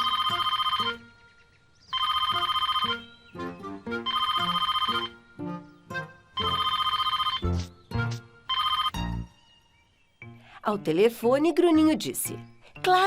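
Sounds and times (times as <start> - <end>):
telephone ringing: 0.0 - 1.0, 1.9 - 3.1, 4.0 - 5.2, 6.4 - 7.5, 8.5 - 9.0.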